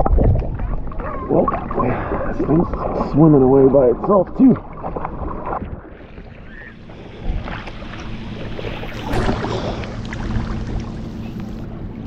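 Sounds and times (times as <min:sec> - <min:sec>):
water sloshing and splashing: 0:00.0 - 0:12.0
low steady hum: 0:05.9 - 0:12.0.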